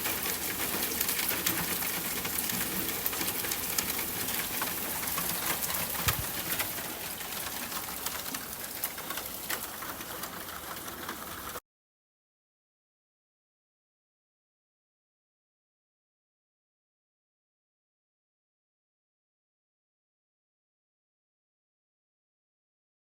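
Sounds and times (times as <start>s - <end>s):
steady rain falling: 0.0s - 11.6s.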